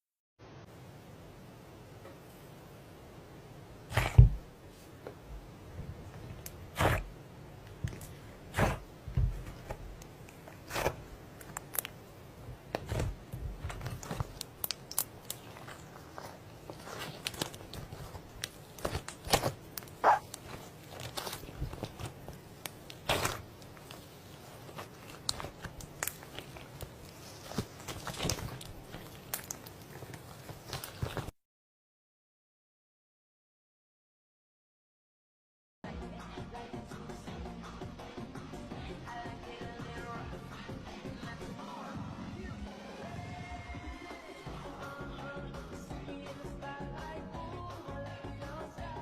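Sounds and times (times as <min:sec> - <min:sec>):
slime crunching and popping: 0:06.4 - 0:07.1, 0:07.8 - 0:08.8, 0:09.4 - 0:12.0, 0:12.7 - 0:31.3.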